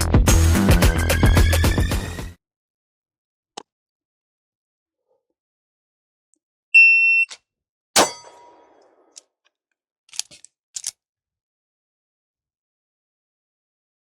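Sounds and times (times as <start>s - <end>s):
shot timer beep: 6.8s - 7.3s
handgun shot: 8.0s - 9.2s
reload clicks and clacks: 10.1s - 11.0s.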